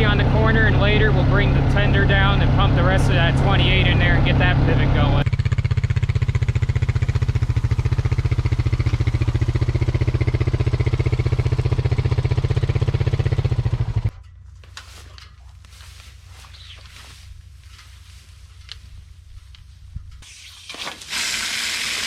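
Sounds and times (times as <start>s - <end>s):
engine running steadily: 0.0s - 22.0s
faint rustling: 14.3s - 20.2s.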